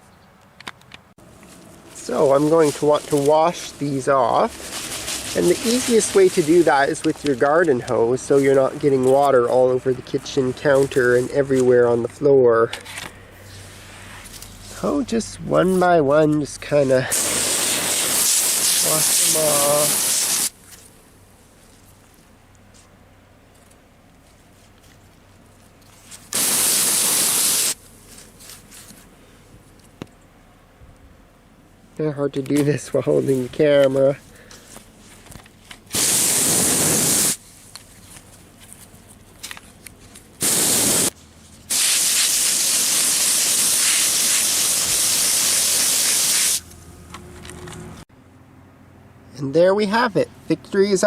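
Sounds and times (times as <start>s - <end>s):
garden hose spraying water: 2.0s - 7.6s, 17.1s - 20.6s, 26.3s - 27.8s, 35.9s - 37.4s, 40.4s - 46.7s.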